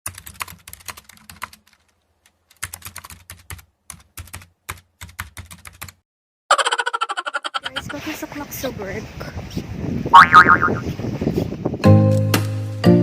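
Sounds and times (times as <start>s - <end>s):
computer keyboard typing: 0.1s - 6.0s.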